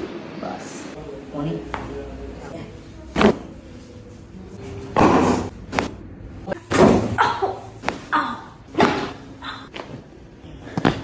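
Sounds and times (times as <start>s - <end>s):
thuds and slaps on body: 8.8s - 9.2s.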